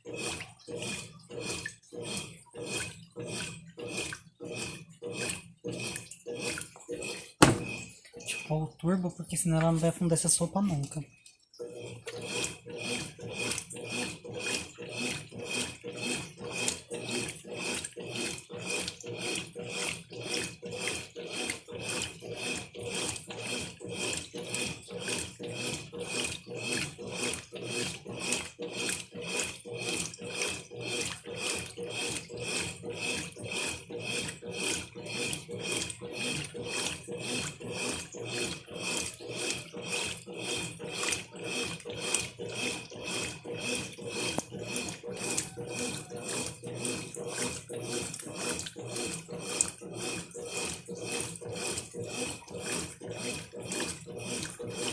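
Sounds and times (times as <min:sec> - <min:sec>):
washing machine agitating: 0:00.0 - 0:54.9.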